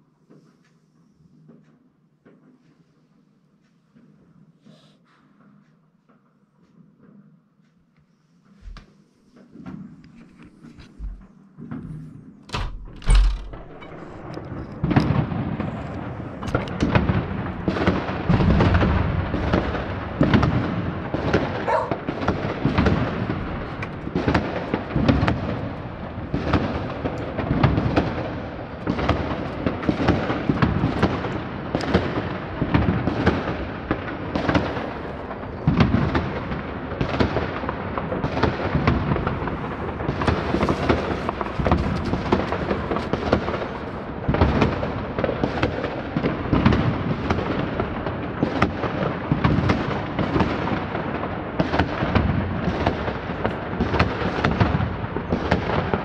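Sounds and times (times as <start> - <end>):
fireworks booming and crackling: 8.6 - 56.0
sharp firework bangs: 13.1 - 56.0.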